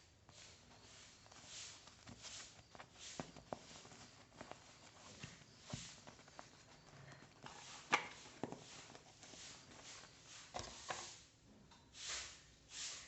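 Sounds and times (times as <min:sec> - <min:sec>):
soft hissing: 0:00.0 - 0:13.0.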